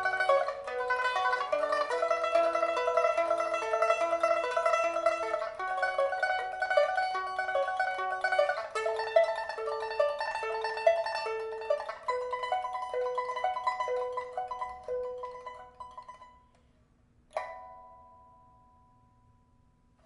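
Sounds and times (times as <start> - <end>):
pipa plucked notes: 0.0 - 16.5, 17.3 - 18.6
pipa chord ringing: 17.3 - 20.0.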